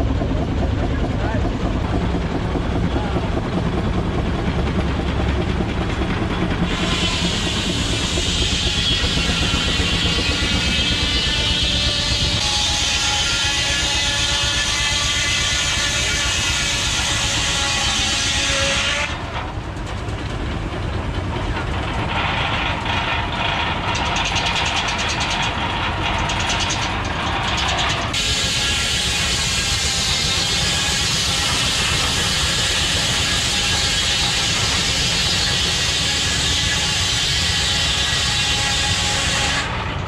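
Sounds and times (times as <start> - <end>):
steam engine chugging: 0.0 - 40.0
saw blade whining: 6.5 - 19.6, 21.5 - 40.0.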